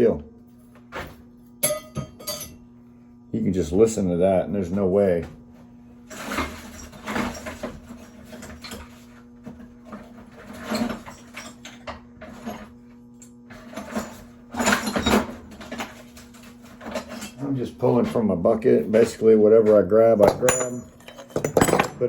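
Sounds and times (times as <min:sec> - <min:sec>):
steady low hum: 0:00.0 - 0:22.0
scrap metal pieces clinking: 0:01.6 - 0:02.6, 0:10.4 - 0:17.4, 0:20.2 - 0:22.0.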